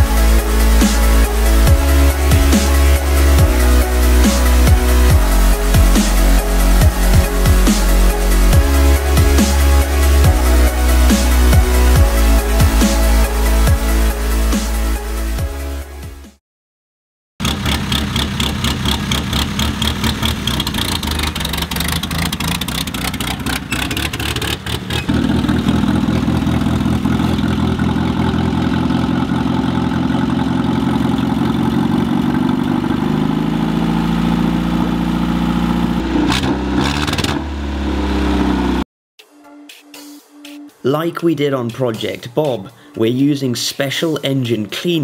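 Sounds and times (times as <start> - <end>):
engine cranking: 17.4 - 34.0
engine idling: 17.4 - 38.8.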